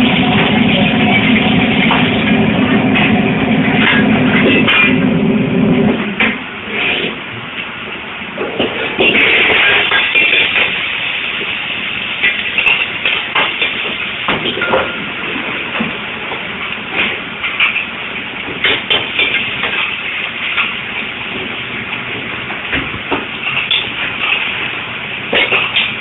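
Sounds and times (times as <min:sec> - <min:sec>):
gas burner hissing: 0:00.0 - 0:26.0
clams clanking in wok: 0:09.0 - 0:11.2.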